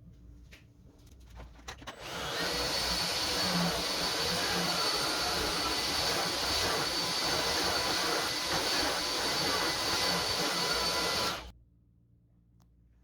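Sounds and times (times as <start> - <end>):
stick vacuum whining: 1.9 - 11.5.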